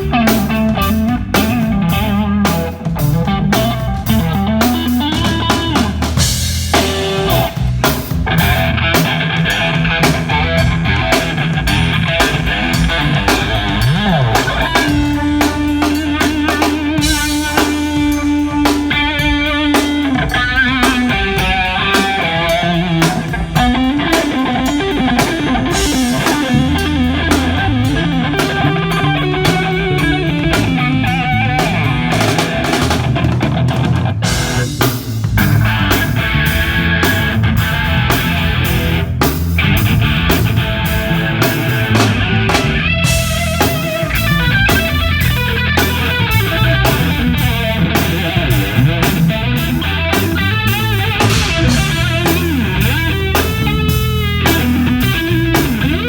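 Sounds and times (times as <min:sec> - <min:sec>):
drum kit beat: 0:00.0 - 0:56.0
electric guitar: 0:00.0 - 0:56.0
low bass line: 0:00.0 - 0:56.0.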